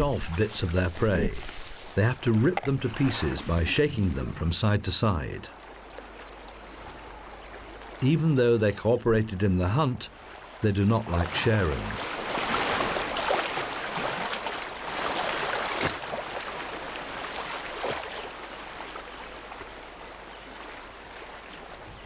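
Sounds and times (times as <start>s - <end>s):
water splashing and churning: 0.0s - 22.0s.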